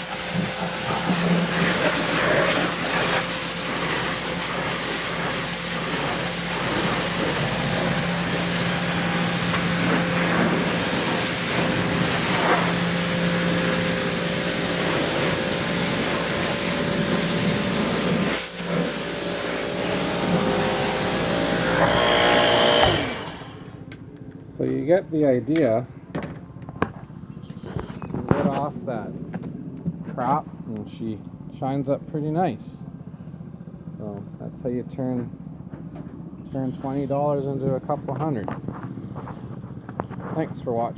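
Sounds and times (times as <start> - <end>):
water jet hissing: 0.0 - 23.8
pressure washer motor hum: 0.0 - 24.0.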